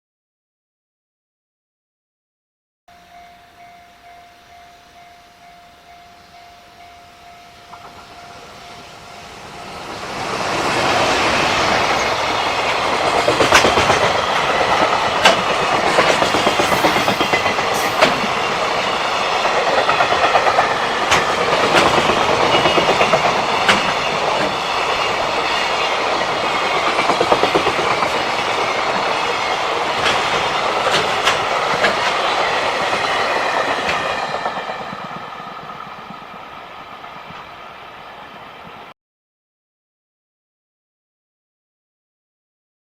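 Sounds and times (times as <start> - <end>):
freight train wagons running: 3.1 - 38.9
wheels clicking over rail joints: 7.7 - 8.6, 9.8 - 36.4.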